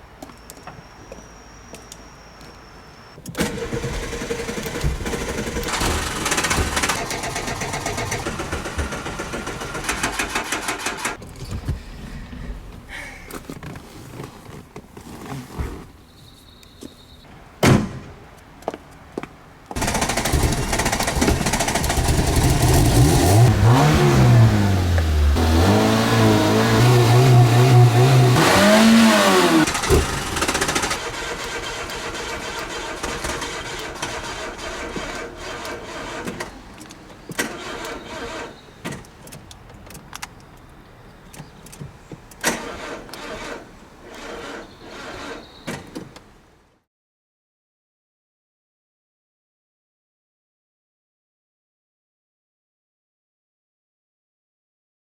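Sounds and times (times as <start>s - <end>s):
engine cranking on starter: 3.3s - 12.9s, 19.8s - 39.2s, 42.4s - 45.6s
car engine running unevenly: 3.4s - 13.7s, 19.8s - 35.2s.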